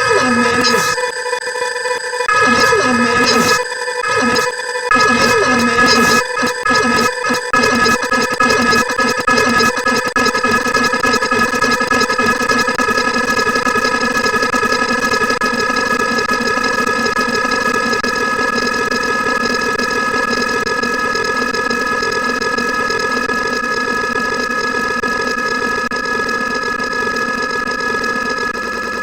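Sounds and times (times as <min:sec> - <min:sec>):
loud steady drone: 0:00.0 - 0:01.1.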